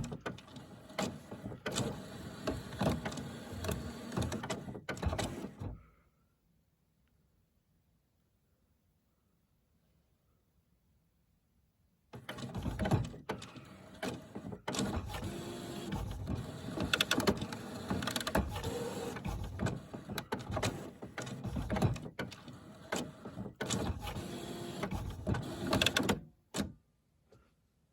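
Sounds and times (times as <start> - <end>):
inkjet printer mechanism running: 0.0 - 5.6, 12.2 - 26.2
printer clicks: 12.2 - 26.7.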